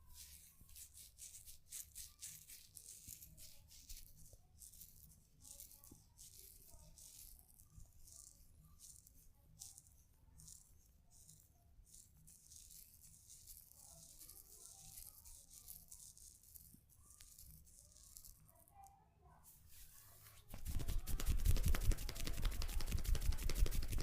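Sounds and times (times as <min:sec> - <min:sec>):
hair rustling under hands: 0:00.0 - 0:07.4, 0:19.5 - 0:24.0.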